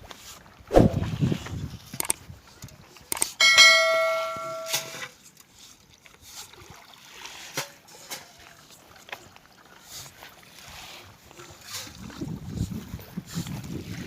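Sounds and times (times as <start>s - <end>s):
metallic ring: 3.3s - 5.1s.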